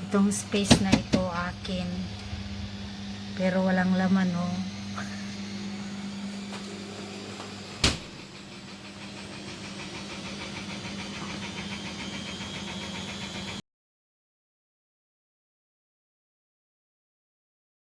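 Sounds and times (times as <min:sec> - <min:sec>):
appliance humming: 0:00.0 - 0:13.6.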